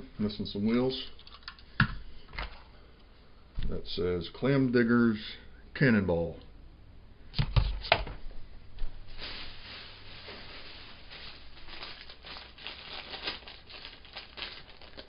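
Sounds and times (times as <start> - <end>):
packaging crinkling: 9.0 - 15.0.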